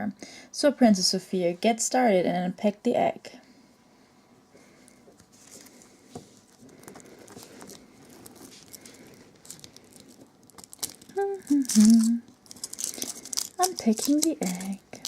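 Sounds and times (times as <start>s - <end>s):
foil wrapper crinkling: 6.4s - 15.0s.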